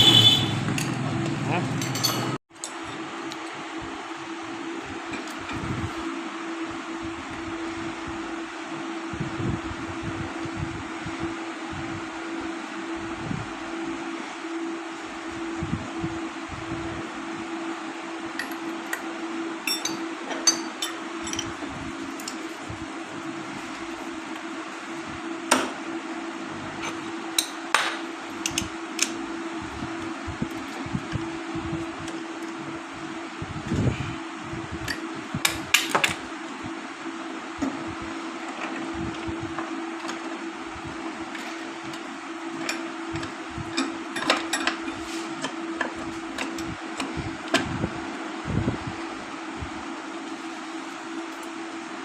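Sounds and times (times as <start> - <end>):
steady hum: 0.0 - 52.0
metal tools knocking on parts: 0.6 - 2.4
metal tools clicking and knocking: 1.8 - 2.8.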